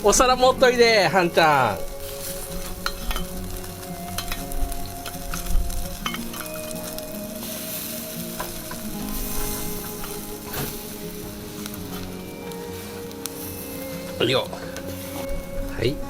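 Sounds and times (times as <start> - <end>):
background music: 0.0 - 16.0
sharp crackles and pops: 0.0 - 16.0
skewers sizzling over charcoal: 0.0 - 16.0.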